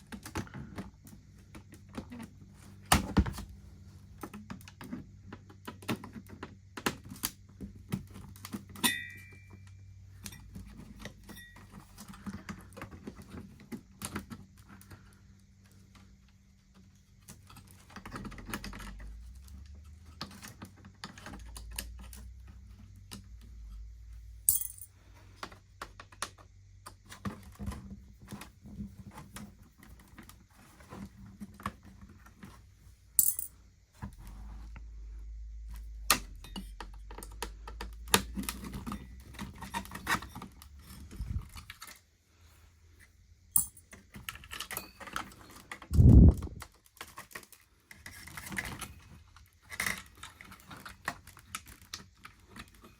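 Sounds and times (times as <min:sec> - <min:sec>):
screw ringing: 0:08.8 - 0:09.4
metallic clinks of screws: 0:24.5 - 0:24.9, 0:33.2 - 0:33.6, 0:43.5 - 0:43.8.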